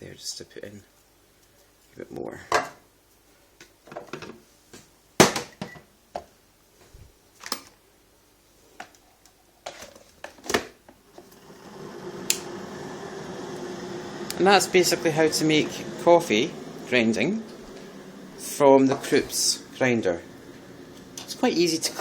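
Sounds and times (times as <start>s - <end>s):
steady hiss: 13.9s - 22.0s.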